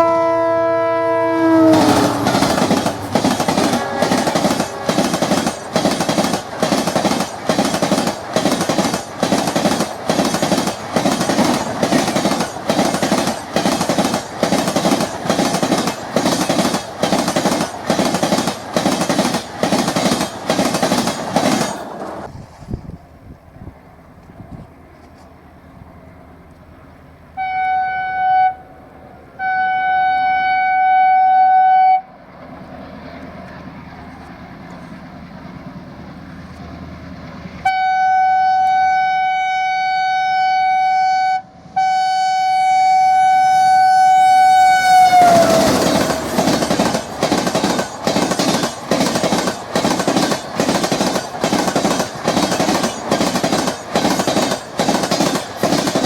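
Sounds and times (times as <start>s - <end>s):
locomotive horn blasts: 0.0s - 2.4s, 3.6s - 4.9s, 27.4s - 28.7s, 29.4s - 32.1s, 37.6s - 46.3s
train wheels clacking over rail joints: 1.7s - 22.3s, 44.9s - 56.0s.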